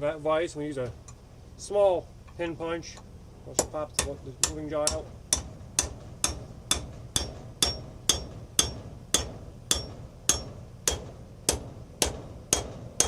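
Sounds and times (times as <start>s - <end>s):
hammer striking metal punch: 3.6s - 13.0s.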